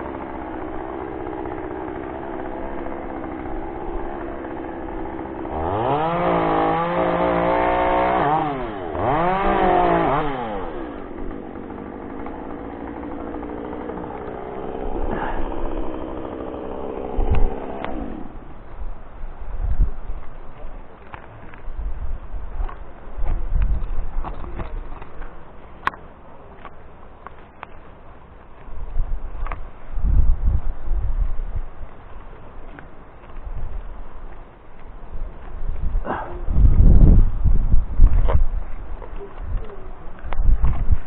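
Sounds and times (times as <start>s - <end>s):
chainsaw idling and revving: 0.0s - 19.2s.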